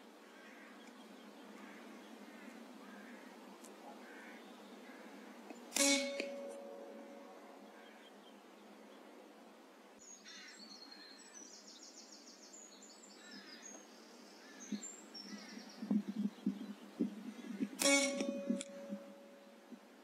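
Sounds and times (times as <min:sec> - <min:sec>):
small birds chirping: 0:00.0 - 0:20.0
sharp crack: 0:05.5 - 0:07.5, 0:17.0 - 0:19.3.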